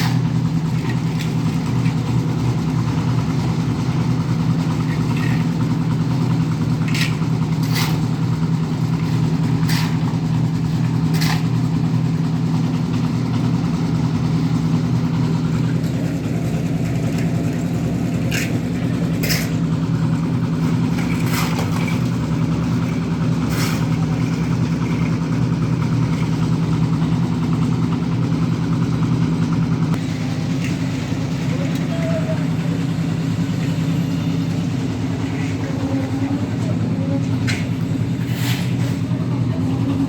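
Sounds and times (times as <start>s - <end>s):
concrete mixer engine running: 0.0s - 40.0s
tools clinking and scraping: 6.8s - 8.2s, 18.2s - 19.6s.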